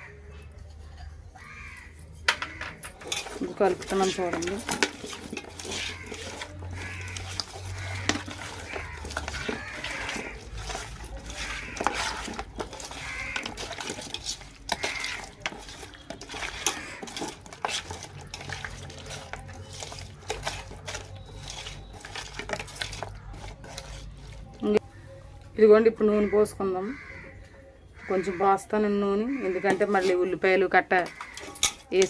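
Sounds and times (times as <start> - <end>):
hands mixing food in metal bowl: 0.0 - 27.4, 28.0 - 32.0.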